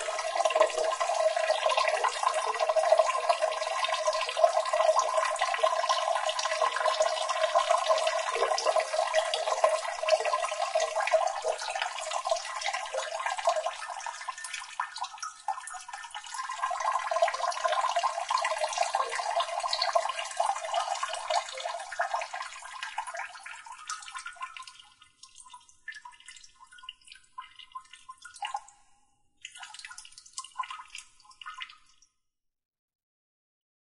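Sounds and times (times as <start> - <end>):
running water splashing: 0.0 - 3.7
water drips and trickles: 0.0 - 32.2.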